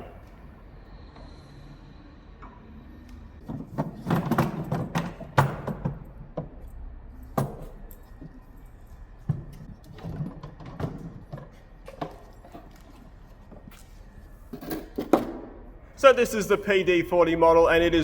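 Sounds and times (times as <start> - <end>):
tools knocking and clattering: 3.4 - 8.6, 9.2 - 13.8, 14.5 - 15.6.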